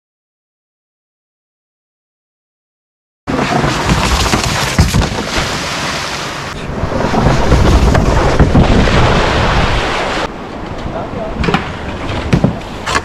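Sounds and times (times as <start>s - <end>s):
wind buffeting microphone: 5.2s - 12.8s.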